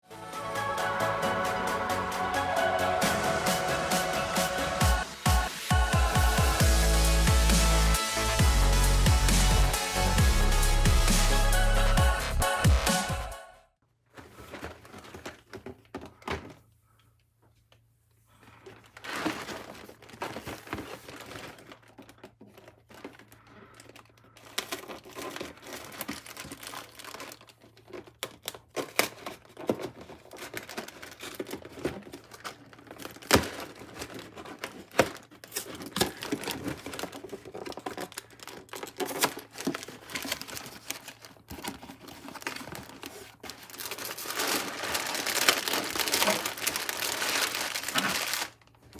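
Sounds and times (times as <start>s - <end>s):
plastic bags crinkling and tearing: 18.3s - 48.9s
plastic parts clicking and knocking: 18.6s - 48.9s.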